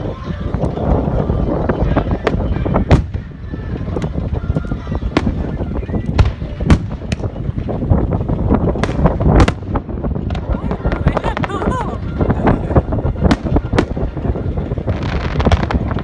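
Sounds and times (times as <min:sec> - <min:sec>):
steady low rumble: 0:00.0 - 0:16.0
fireworks sharp bangs: 0:05.1 - 0:16.0.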